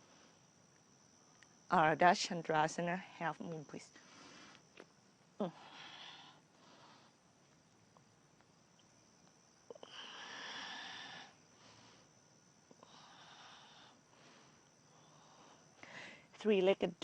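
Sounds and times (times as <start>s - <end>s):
person breathing: 4.0s - 4.7s, 5.4s - 7.2s, 9.8s - 16.3s.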